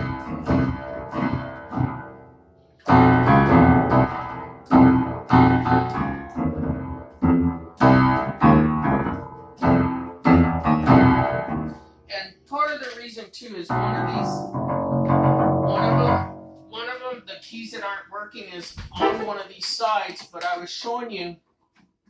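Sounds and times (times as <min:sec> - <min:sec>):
piano chords: 0:00.0 - 0:12.0, 0:13.7 - 0:16.8.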